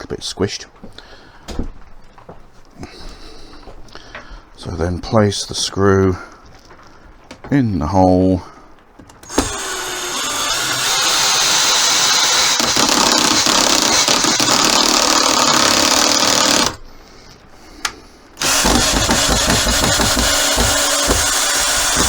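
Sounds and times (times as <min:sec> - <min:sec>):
power screwdriver labouring: 0:09.2 - 0:16.8, 0:18.4 - 0:22.0
screwdriver click: 0:18.4 - 0:22.0.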